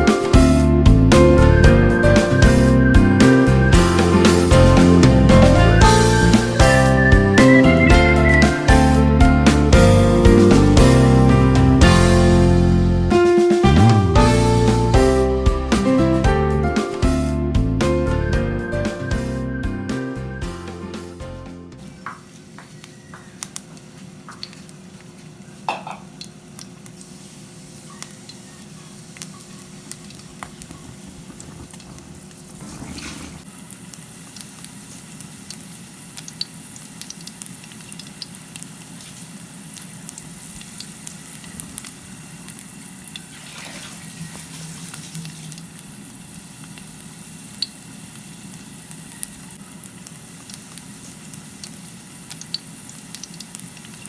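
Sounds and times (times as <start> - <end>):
food sizzling in a pan: 21.8 - 54.0.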